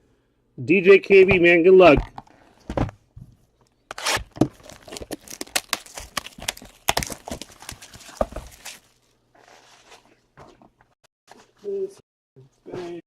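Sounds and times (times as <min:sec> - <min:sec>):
cardboard clicks and knocks: 0:02.0 - 0:03.4, 0:04.2 - 0:08.8
plastic wrapping crackling: 0:03.9 - 0:09.1.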